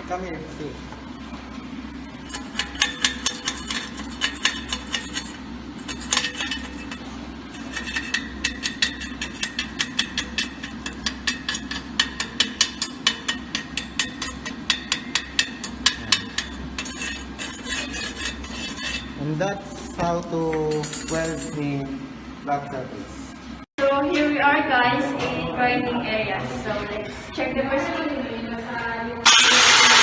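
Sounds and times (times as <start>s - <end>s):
hammer tapping metal: 2.3s - 7.0s, 7.6s - 19.1s.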